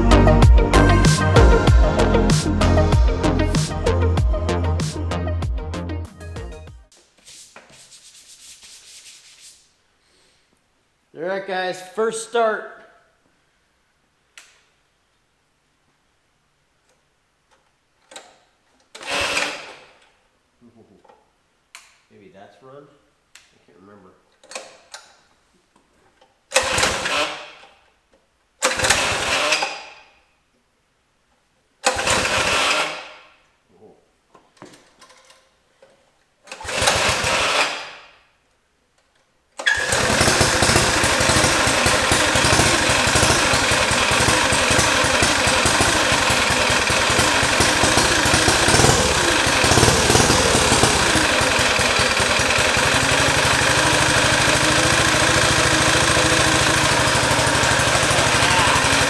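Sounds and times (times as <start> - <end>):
recoil starter pulls: 36.5 - 37.9, 39.6 - 59.0
small engine running: 39.7 - 59.0.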